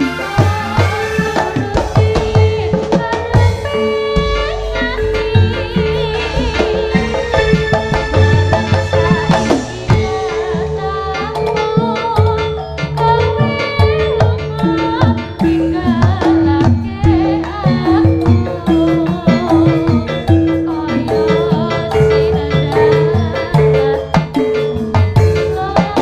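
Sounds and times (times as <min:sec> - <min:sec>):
hand drums beating: 0:00.0 - 0:26.0
wavering melody line: 0:00.0 - 0:26.0.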